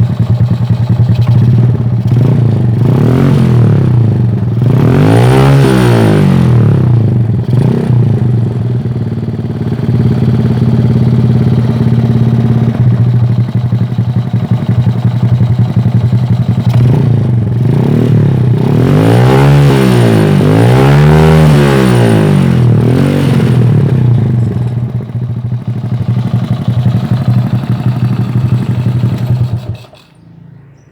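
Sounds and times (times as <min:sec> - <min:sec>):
motorcycle engine idling and revving: 0:00.0 - 0:30.9.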